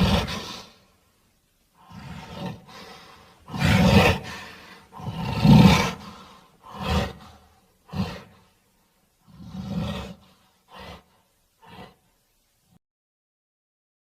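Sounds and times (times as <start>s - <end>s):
dinosaur roars: 0.0s - 0.7s, 1.8s - 8.4s, 9.3s - 12.1s.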